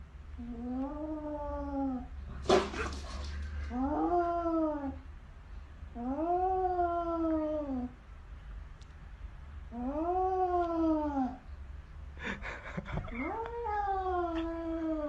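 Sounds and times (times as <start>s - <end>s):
cat yowling: 13.2s - 15.0s.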